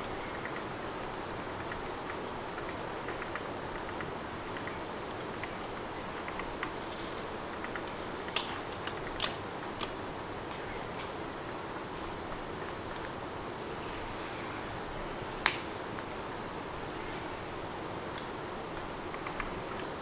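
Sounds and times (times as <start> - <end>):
small birds chirping: 0.1 - 12.1, 12.9 - 14.2, 19.1 - 20.0.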